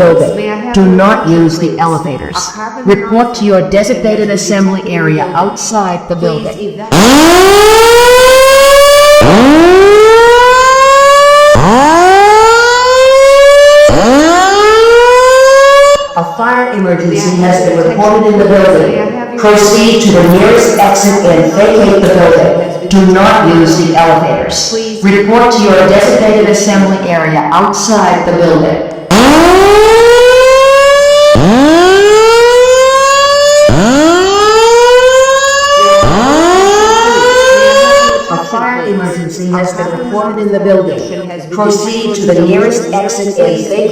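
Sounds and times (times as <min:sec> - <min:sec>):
fire alarm whoop tone: 0:06.9 - 0:16.2, 0:29.1 - 0:38.6.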